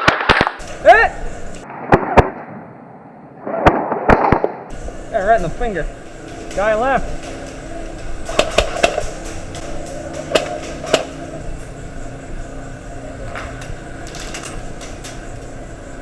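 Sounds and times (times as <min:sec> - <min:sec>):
airsoft guns firing: 0:00.0 - 0:00.8, 0:03.6 - 0:04.8, 0:08.1 - 0:11.2.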